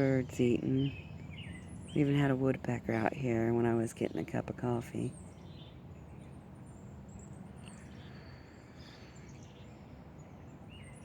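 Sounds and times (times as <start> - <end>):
birds chirping: 0.0 - 11.0.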